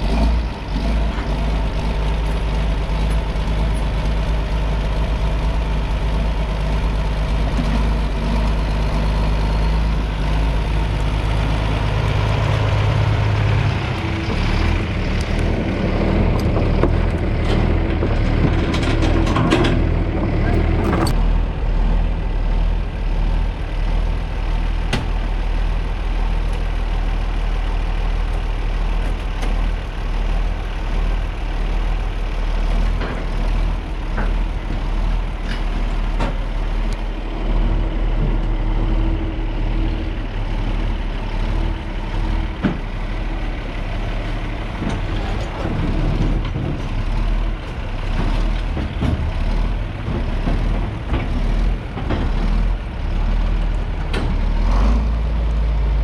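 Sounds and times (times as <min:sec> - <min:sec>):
heavy engine idling: 0:00.0 - 0:56.0
sharp clicks and knocks: 0:16.2 - 0:21.2.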